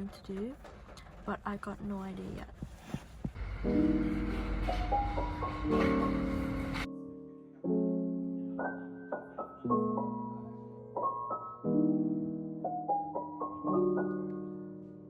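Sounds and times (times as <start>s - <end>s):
soft solo piano: 4.8s - 15.0s.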